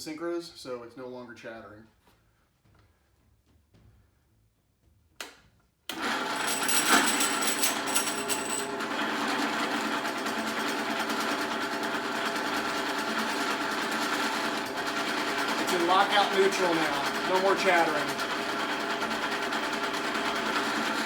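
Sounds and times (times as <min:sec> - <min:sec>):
drill press spinning gears: 0:05.9 - 0:21.0.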